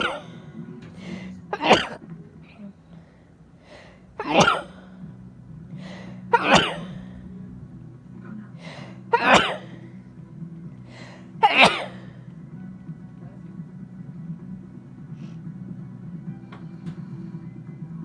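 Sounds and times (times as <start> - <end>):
catching breath: 0.0 - 1.5, 2.5 - 5.1, 5.7 - 7.3, 8.6 - 9.8, 10.8 - 12.3
person sneezing: 0.0 - 2.0, 4.2 - 4.9, 5.8 - 7.1, 8.6 - 9.8, 11.4 - 12.1.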